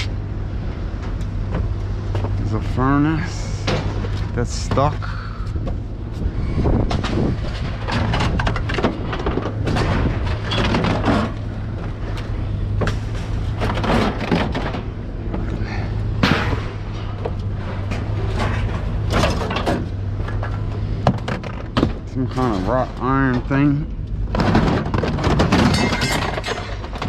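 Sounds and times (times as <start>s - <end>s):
steady low hum: 0.0s - 27.0s
scrap metal clanking and banging: 1.0s - 27.0s.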